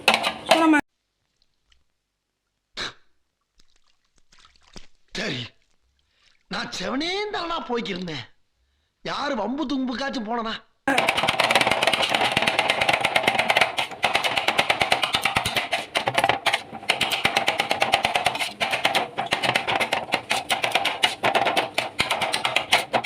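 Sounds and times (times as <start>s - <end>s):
metal spatulas clanging on griddle: 0.0s - 0.8s, 10.9s - 23.0s.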